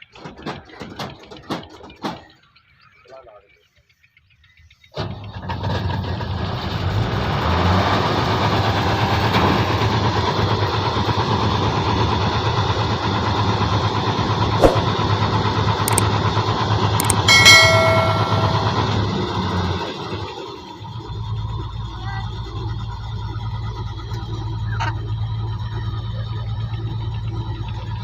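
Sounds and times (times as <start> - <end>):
short high-pitched tone: 17.0 - 19.2.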